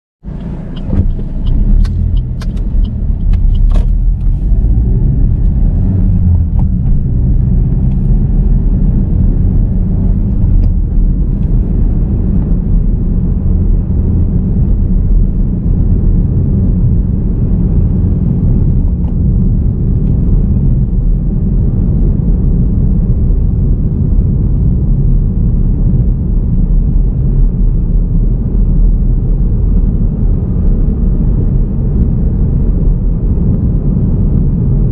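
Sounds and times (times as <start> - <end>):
engine and tyre rumble: 0.2 - 34.9
sharp clicks: 0.4 - 4.3.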